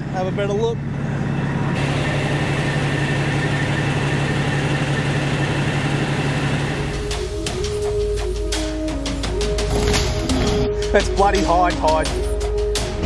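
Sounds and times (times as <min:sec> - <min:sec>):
diesel engine idling: 0:00.0 - 0:11.8
music: 0:06.4 - 0:13.0.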